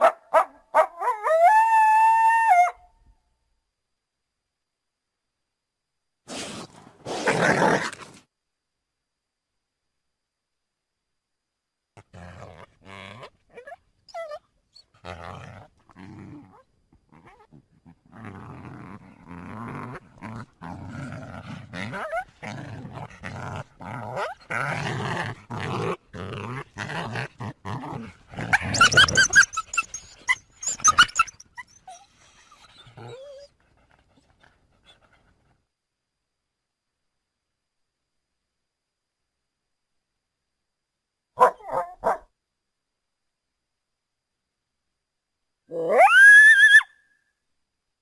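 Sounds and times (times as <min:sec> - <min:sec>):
coyote growling calls: 0:12.0 - 0:33.5, 0:45.7 - 0:46.9
coyote high-pitched yelps: 0:28.5 - 0:32.1, 0:45.7 - 0:47.0.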